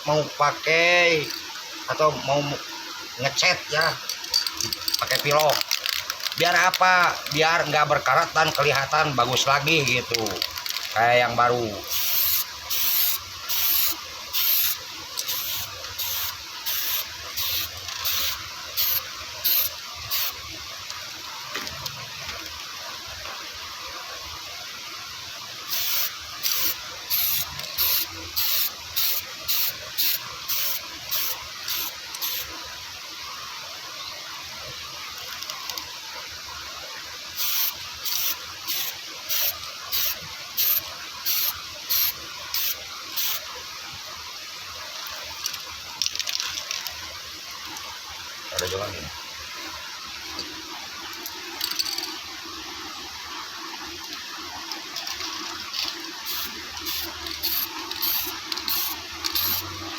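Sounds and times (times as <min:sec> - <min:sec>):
steady faint hiss: 0:00.0 - 0:59.9
spray can hissing bursts: 0:11.8 - 0:20.5, 0:25.7 - 0:32.5, 0:37.4 - 0:43.4, 0:56.2 - 0:59.8.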